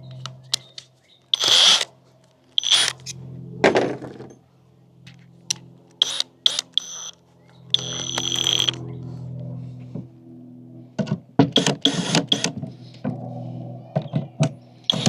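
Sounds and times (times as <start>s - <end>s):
small clicks: 0.1s - 3.2s, 5.1s - 8.9s, 11.6s - 12.6s
power drill whining: 1.3s - 1.9s, 2.5s - 3.2s, 6.0s - 8.8s, 11.6s - 12.6s.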